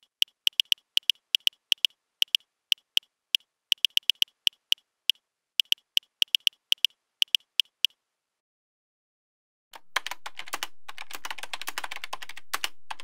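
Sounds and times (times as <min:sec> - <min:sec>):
keyboard key clicks: 0:00.0 - 0:03.1, 0:03.7 - 0:04.8, 0:05.6 - 0:07.9.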